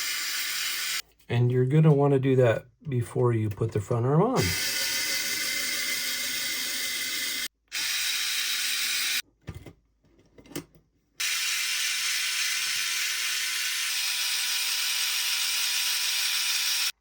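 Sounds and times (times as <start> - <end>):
electric screwdriver running: 0.0 - 1.0, 4.4 - 9.2, 11.2 - 17.0.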